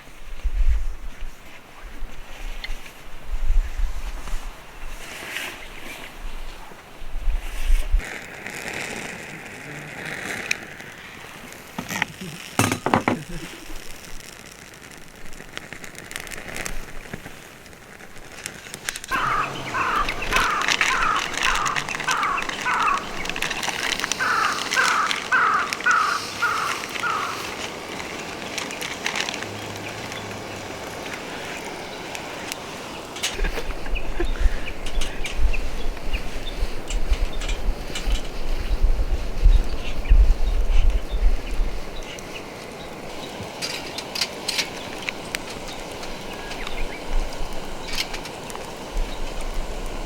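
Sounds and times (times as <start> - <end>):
outdoor background noise: 0.0 - 50.0
songbird chirping: 19.1 - 28.9.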